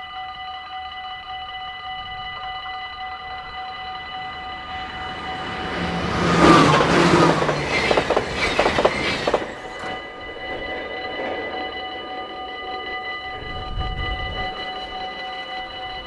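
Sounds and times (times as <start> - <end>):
electronic warning bell ringing: 0.0 - 16.0
train rushing past: 3.0 - 16.0
train wheels clacking on rail joints: 3.1 - 13.7.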